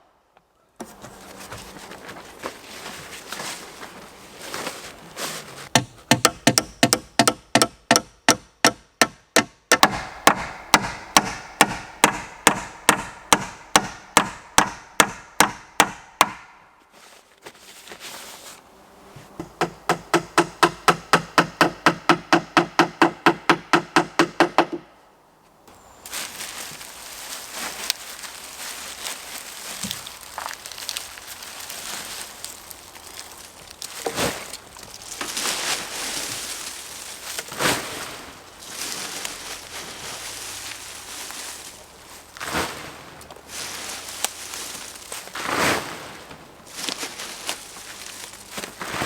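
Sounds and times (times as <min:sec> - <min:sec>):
rustling: 0:00.8 - 0:06.9, 0:16.8 - 0:20.3, 0:25.4 - 0:49.0
hammer striking wood: 0:05.7 - 0:16.7, 0:19.4 - 0:24.9.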